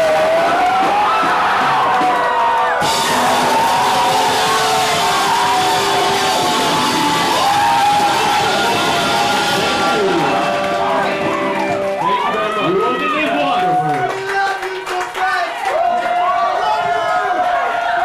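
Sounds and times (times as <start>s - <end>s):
live rock band playing: 0.0s - 13.8s
cymbal crash: 2.8s - 10.9s.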